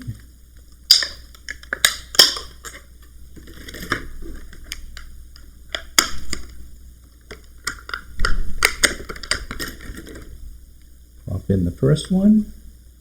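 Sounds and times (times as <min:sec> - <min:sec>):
plastic packaging clicks and snaps: 0:00.7 - 0:06.6, 0:07.2 - 0:10.3
packaging crinkle: 0:00.9 - 0:06.6, 0:07.2 - 0:10.4.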